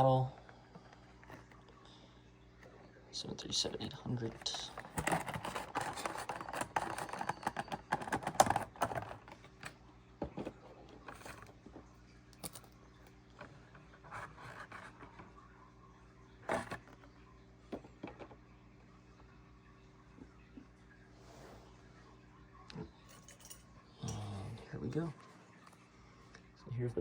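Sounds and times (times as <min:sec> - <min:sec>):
plastic and cardboard rustling: 0:04.2 - 0:12.6, 0:13.4 - 0:15.3, 0:16.4 - 0:17.0.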